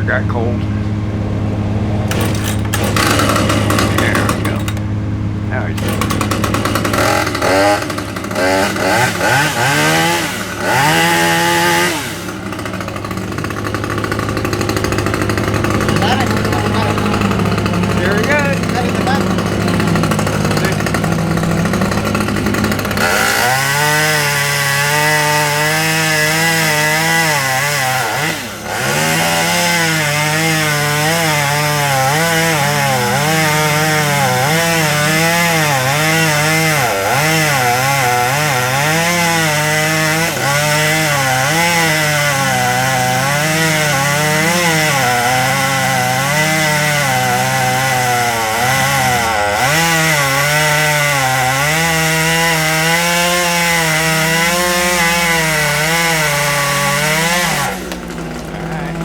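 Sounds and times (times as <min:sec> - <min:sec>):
chainsaw cutting through a limb: 0:01.8 - 0:59.0.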